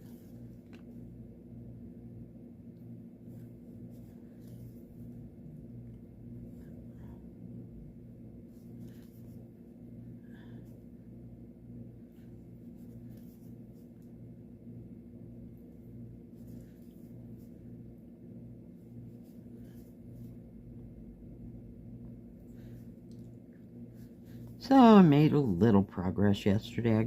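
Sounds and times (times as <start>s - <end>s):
pulsing low hum: 0.0s - 24.6s
needle scratching through fabric: 8.4s - 9.5s, 12.2s - 14.1s, 16.3s - 17.6s.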